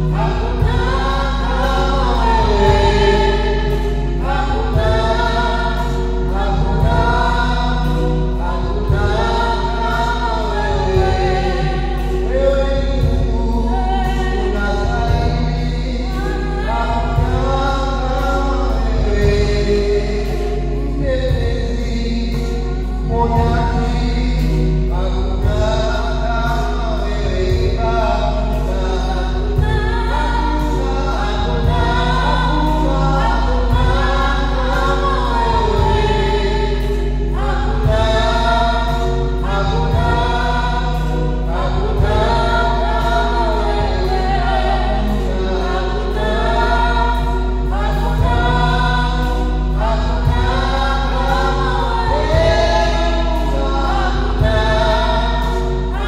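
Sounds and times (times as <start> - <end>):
choir singing a hymn: 0.0 - 56.0
low beat: 0.0 - 56.0.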